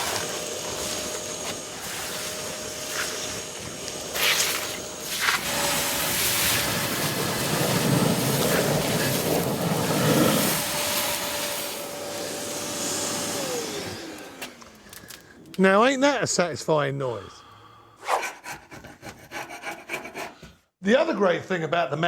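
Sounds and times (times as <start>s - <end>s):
wet and dry vacuum motor whine: 0.0s - 15.6s
vacuum slurping wet sludge: 4.1s - 12.0s.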